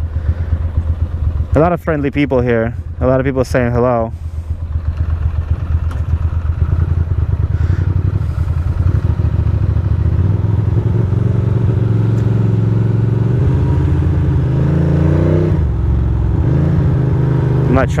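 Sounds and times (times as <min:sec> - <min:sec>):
motorcycle engine idling: 0:00.0 - 0:12.2.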